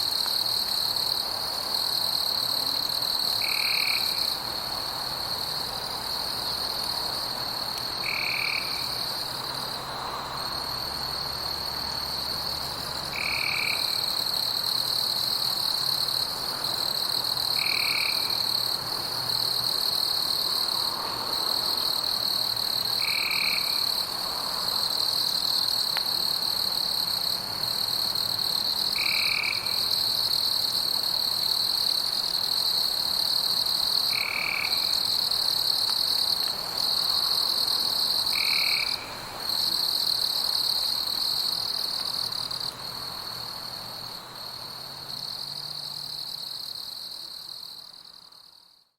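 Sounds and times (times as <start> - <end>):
high-pitched insect trill: 24.6 - 48.7.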